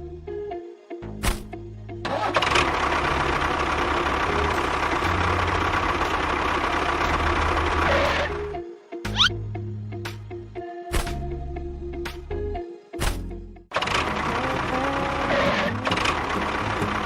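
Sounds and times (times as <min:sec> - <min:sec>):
rattly motor running: 0:02.1 - 0:08.5, 0:13.7 - 0:17.0.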